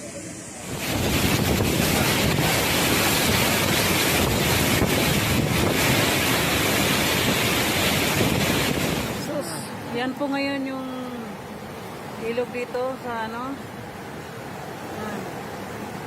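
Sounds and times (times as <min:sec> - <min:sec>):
strong wind rushing: 0:00.0 - 0:09.7
churning water: 0:00.0 - 0:16.0
wind buffeting microphone: 0:00.5 - 0:10.5.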